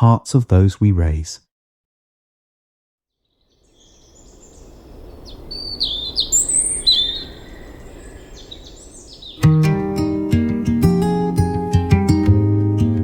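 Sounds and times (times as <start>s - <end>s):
birds chirping and whistling: 3.4s - 9.5s
outdoor background noise: 3.4s - 10.3s
acoustic guitar: 9.4s - 13.0s.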